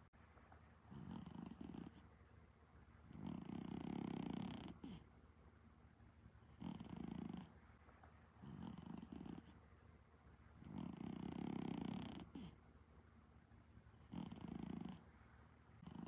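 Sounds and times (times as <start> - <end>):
cat snoring softly: 0.9 - 2.1, 3.1 - 5.1, 6.5 - 7.6, 8.4 - 9.6, 10.6 - 12.6, 14.0 - 15.1, 15.8 - 16.0.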